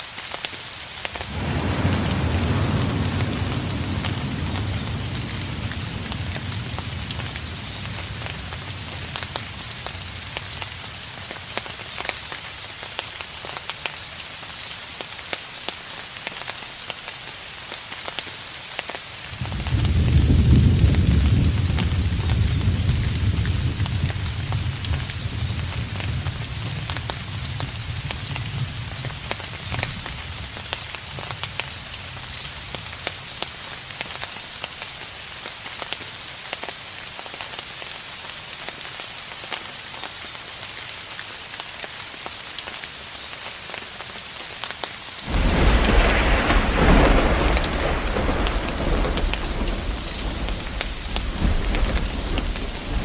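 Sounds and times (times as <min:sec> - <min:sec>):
steady rain falling: 0:00.0 - 0:53.0
thunder rumbling: 0:01.2 - 0:11.8, 0:19.4 - 0:33.0, 0:45.2 - 0:53.0.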